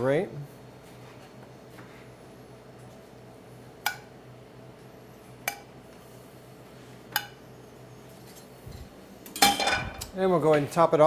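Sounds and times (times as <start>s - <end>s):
low steady hum: 0.0s - 11.0s
metal utensil clinking on dish: 9.3s - 10.1s.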